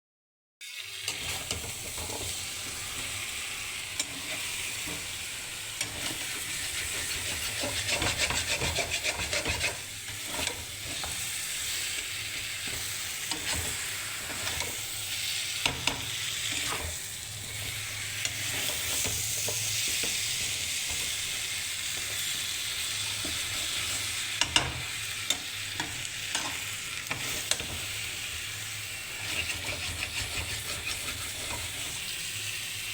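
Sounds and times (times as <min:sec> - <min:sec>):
food sizzling in hot oil: 0:00.6 - 0:32.9
utensil clicking against pan: 0:04.0 - 0:05.1, 0:05.8 - 0:14.8, 0:15.5 - 0:22.3, 0:24.4 - 0:28.0.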